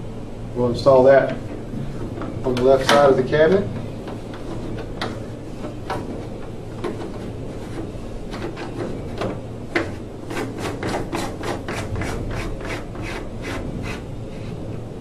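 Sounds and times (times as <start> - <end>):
rubbing strokes: 10.2 - 14.7.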